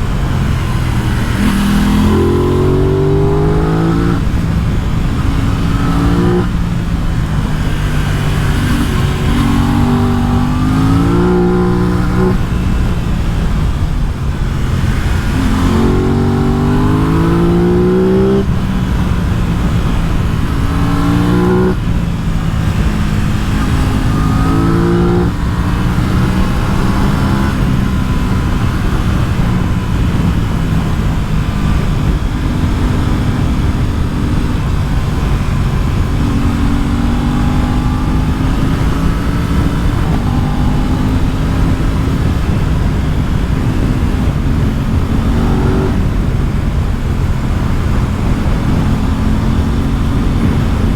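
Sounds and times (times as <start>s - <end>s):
motorcycle engine accelerating: 0.0s - 50.9s.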